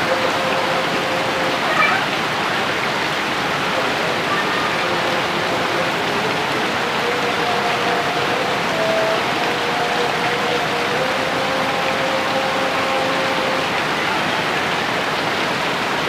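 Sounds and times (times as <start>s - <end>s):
heavy rain pouring: 0.0s - 16.0s
brief high call: 1.6s - 2.2s.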